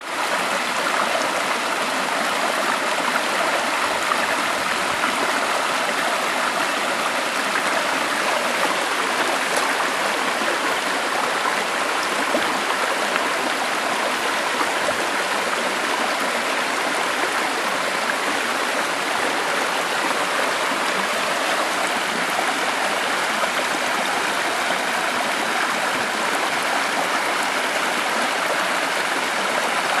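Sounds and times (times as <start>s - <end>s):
stream flowing: 0.0s - 30.0s.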